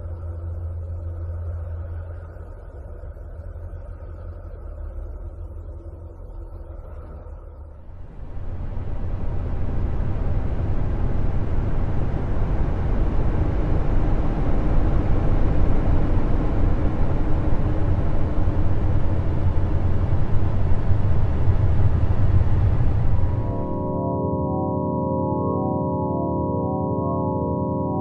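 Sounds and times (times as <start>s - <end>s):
deep rumble: 7.6s - 24.7s.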